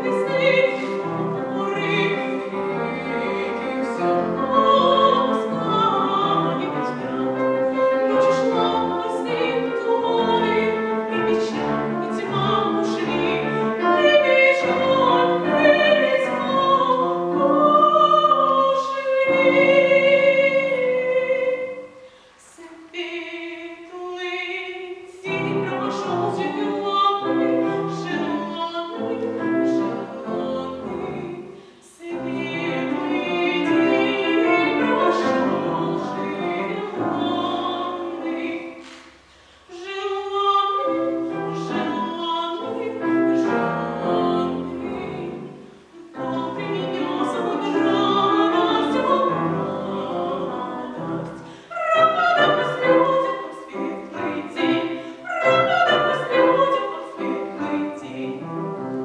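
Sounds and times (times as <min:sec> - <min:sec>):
piano accompaniment: 0:00.0 - 0:22.0, 0:25.3 - 0:59.0.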